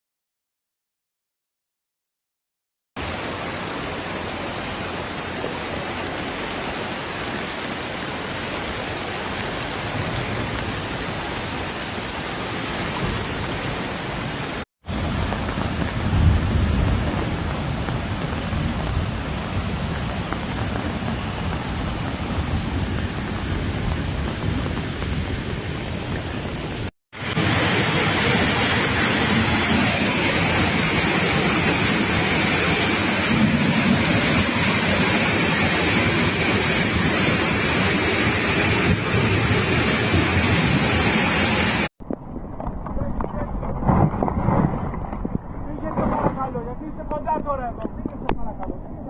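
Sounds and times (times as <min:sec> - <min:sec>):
bright rush of water: 0:03.0 - 0:41.9
heavy rain with low rumble: 0:03.0 - 0:49.0.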